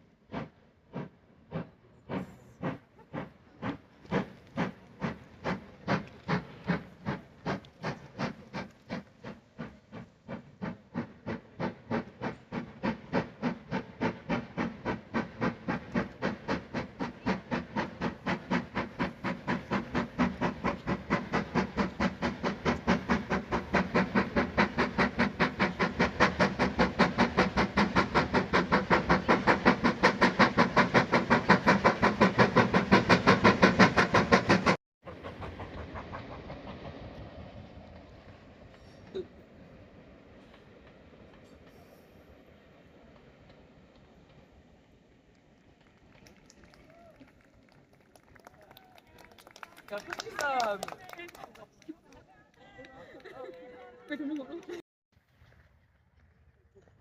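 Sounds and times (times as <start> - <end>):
steam locomotive chuffing: 0.0 - 46.0.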